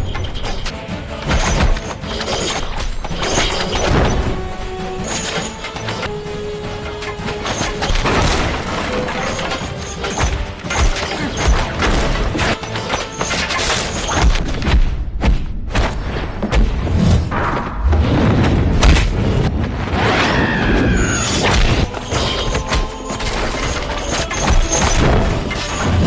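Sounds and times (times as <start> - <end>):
dramatic film music: 0.0 - 26.0
punch and kick impacts: 14.2 - 19.7
low booming thuds: 14.2 - 20.0.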